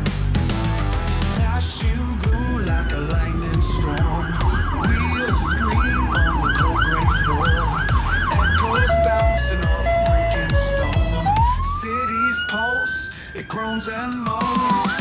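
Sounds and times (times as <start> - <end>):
rock music with steady beat: 0.0 - 12.2, 14.1 - 15.0
police siren wailing and yelping: 2.2 - 15.0.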